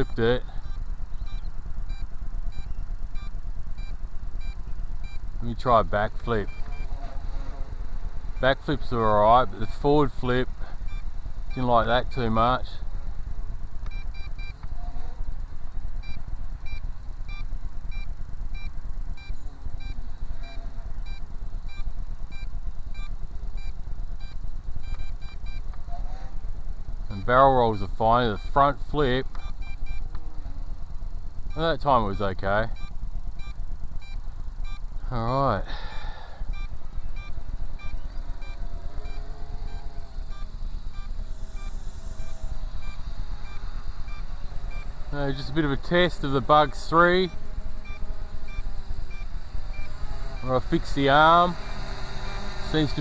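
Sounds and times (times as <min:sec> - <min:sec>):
short electronic beeps: 0:00.0 - 0:05.2, 0:06.2 - 0:07.6, 0:13.9 - 0:15.0, 0:16.0 - 0:25.6, 0:27.1 - 0:28.6, 0:29.2 - 0:30.1, 0:31.5 - 0:35.4, 0:36.4 - 0:53.0
quadcopter propellers humming: 0:00.0 - 0:53.0.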